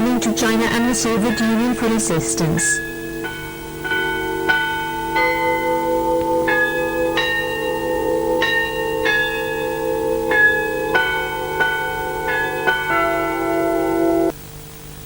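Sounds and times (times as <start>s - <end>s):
faint steady tone and hiss: 0.0s - 15.0s
bell-like chime melody: 3.2s - 14.3s.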